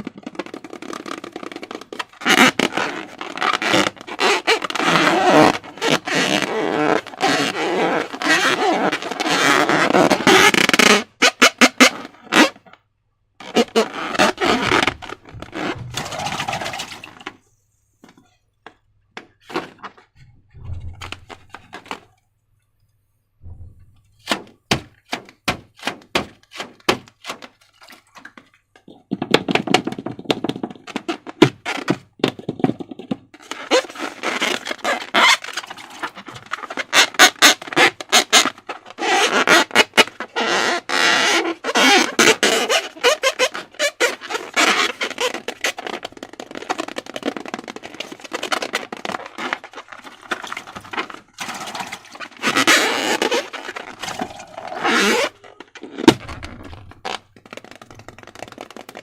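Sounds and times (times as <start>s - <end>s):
soft thuds: 14.6s - 16.6s, 20.1s - 22.1s, 23.4s - 25.6s.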